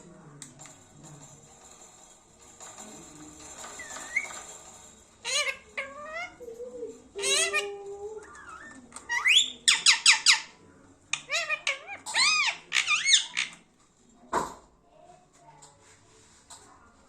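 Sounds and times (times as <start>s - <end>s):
parrot squawking: 5.2s - 6.4s, 7.1s - 13.6s.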